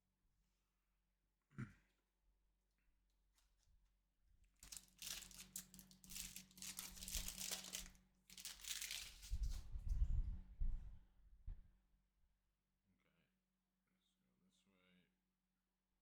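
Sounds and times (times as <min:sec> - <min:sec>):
foil wrapper tearing and crinkling: 0:04.6 - 0:09.6.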